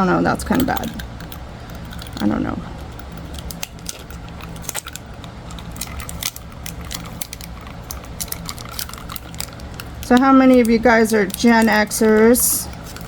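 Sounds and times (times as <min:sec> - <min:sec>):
faint steady hum: 0:00.0 - 0:13.0
tape tearing and crinkling: 0:05.6 - 0:11.8.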